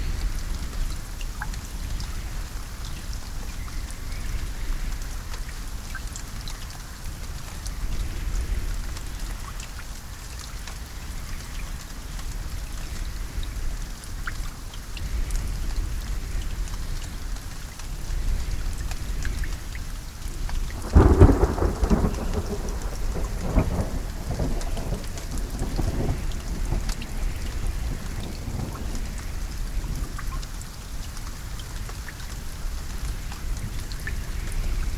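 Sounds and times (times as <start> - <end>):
steady rain falling: 0.0 - 34.9
thunder clap and rumble: 20.4 - 30.4.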